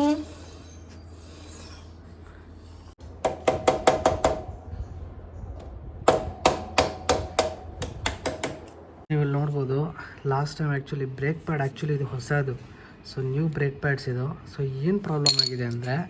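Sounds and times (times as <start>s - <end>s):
hammer tapping metal: 3.2s - 4.5s, 6.1s - 8.8s.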